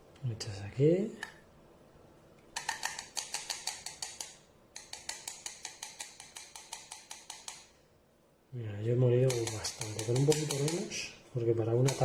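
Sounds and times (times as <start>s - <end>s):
rapid light tapping: 2.6s - 7.7s, 9.2s - 11.1s.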